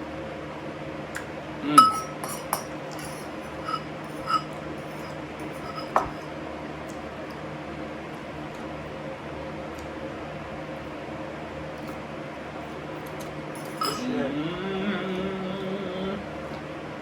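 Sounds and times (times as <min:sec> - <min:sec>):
steady low hum: 0:00.0 - 0:17.0
cutlery clinking on dishes: 0:01.8 - 0:06.3, 0:13.6 - 0:14.1.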